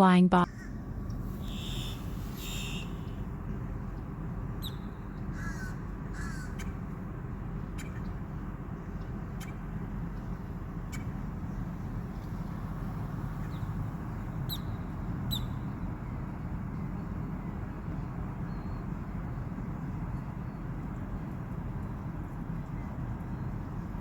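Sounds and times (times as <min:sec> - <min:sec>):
distant traffic rumble: 0:00.0 - 0:24.0
birds chirping: 0:00.4 - 0:06.7.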